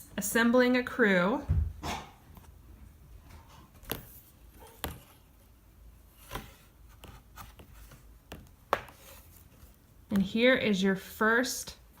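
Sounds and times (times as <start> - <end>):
book pages turning: 6.0 - 10.3.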